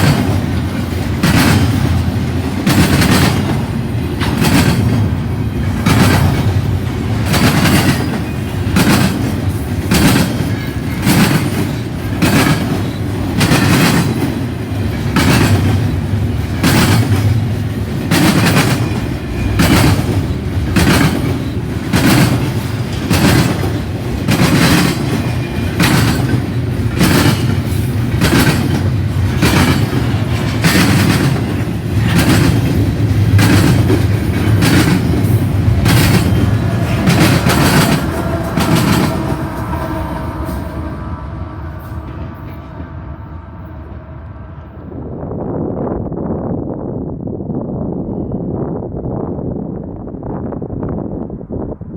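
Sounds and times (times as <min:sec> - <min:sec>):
train wheels clicking over rail joints: 0:00.0 - 0:40.8
train rumble: 0:00.0 - 0:51.9.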